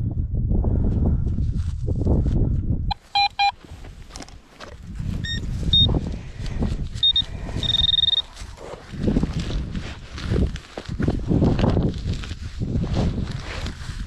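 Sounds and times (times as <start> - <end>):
metal detector beeps: 2.9 - 3.6, 5.2 - 6.0, 7.0 - 8.4
rustling and handling noise: 2.9 - 14.0.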